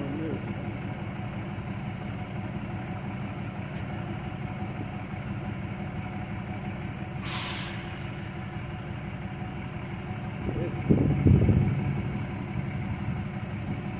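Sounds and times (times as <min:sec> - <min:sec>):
vehicle engine rumbling: 0:00.0 - 0:13.9
air hissing burst: 0:07.2 - 0:08.2.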